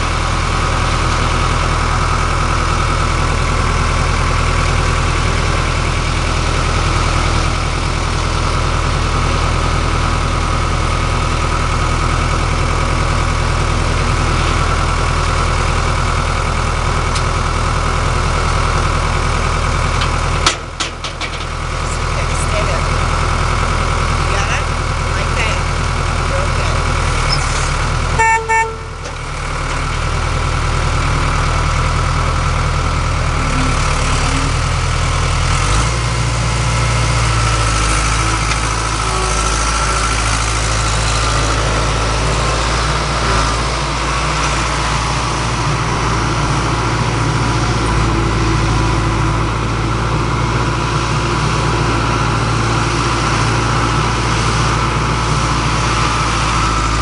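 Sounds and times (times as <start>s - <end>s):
loader engine running: 0.0s - 57.0s
short horn beeps: 28.2s - 29.0s.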